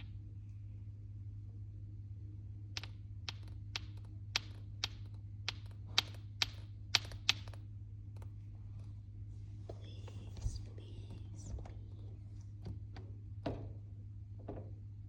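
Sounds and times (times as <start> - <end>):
steady low hum: 0.0 - 15.0
sharp clicks: 2.8 - 8.4.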